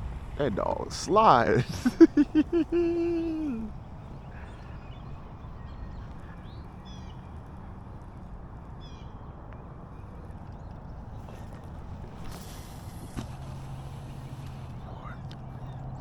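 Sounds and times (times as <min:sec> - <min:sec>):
open-air background hiss: 0:00.0 - 0:05.7.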